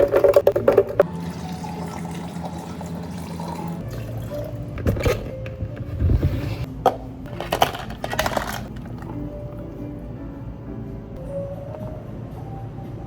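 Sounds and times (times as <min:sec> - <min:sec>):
liquid pouring: 0:00.1 - 0:04.8.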